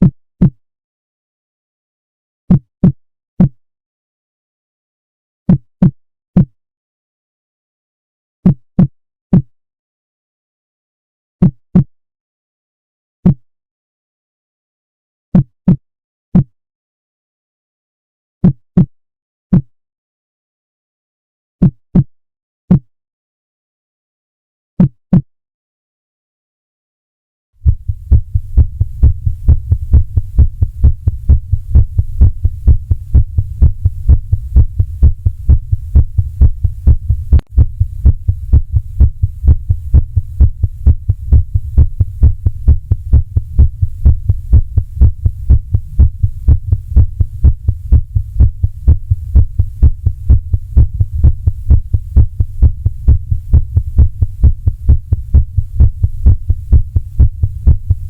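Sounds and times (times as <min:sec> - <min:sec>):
heartbeat: 0:27.6 - 0:58.0
steady low hum: 0:27.6 - 0:58.0.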